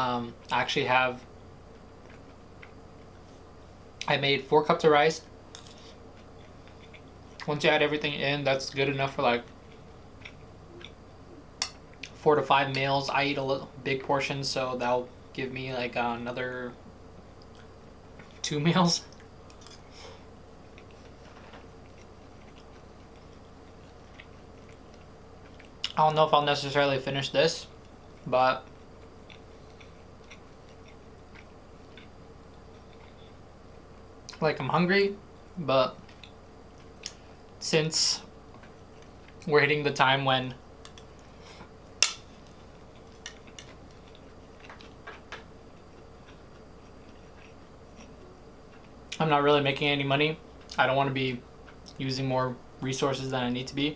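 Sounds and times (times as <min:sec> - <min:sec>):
steady low hum: 0:00.0 - 0:53.9
person chewing food: 0:02.0 - 0:03.4, 0:05.5 - 0:07.5, 0:09.5 - 0:12.2, 0:19.1 - 0:26.0, 0:27.8 - 0:33.4, 0:36.0 - 0:37.3, 0:40.8 - 0:49.2.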